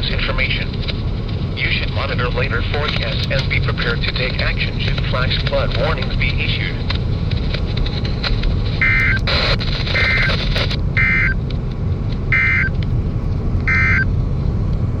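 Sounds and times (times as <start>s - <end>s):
radio hiss and hum: 0.0s - 12.9s, 13.6s - 14.0s
two-tone digital squawks: 10.0s - 10.4s, 11.0s - 11.4s, 12.3s - 12.7s, 13.7s - 14.0s.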